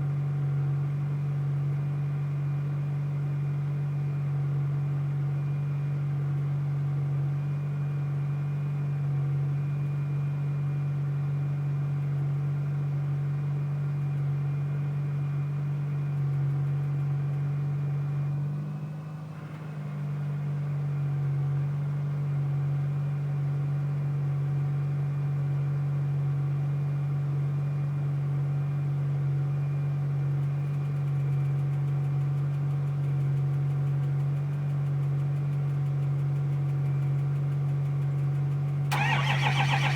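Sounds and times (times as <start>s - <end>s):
steady engine hum: 34.3s - 39.9s.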